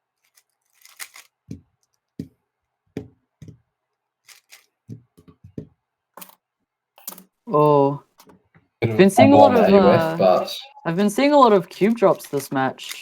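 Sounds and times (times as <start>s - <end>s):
speed cube plastic clicks: 0.2s - 1.6s.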